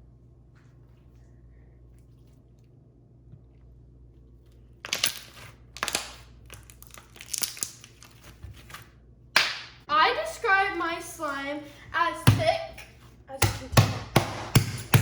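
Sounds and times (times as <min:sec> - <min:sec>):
slime crackling and popping: 0:04.9 - 0:08.1.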